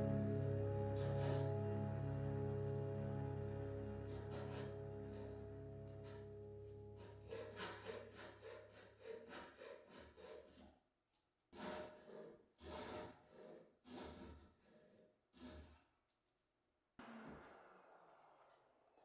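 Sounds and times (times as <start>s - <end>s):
background music: 0.0s - 7.9s.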